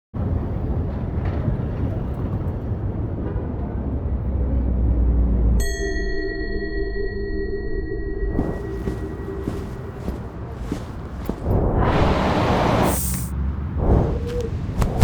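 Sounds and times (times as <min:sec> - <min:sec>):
held ringing tone: 0:05.6 - 0:10.2
low engine drone: 0:08.3 - 0:14.7
city traffic rumble: 0:08.3 - 0:15.0.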